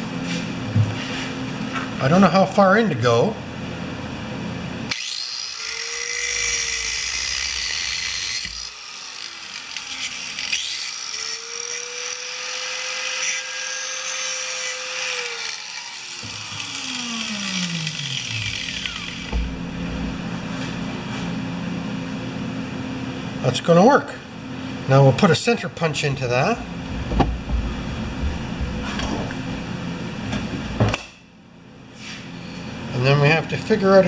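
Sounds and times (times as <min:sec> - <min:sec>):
electric drill drilling: 0:04.9 - 0:20.2.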